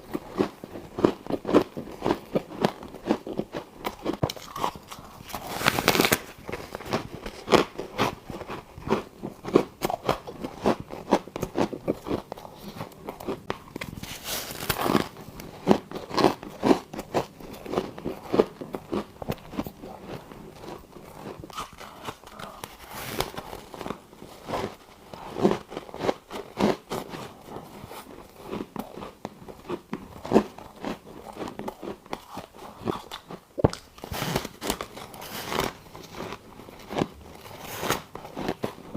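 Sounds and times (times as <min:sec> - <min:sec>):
squeaky crackling ice chewing: 0:00.2 - 0:24.8.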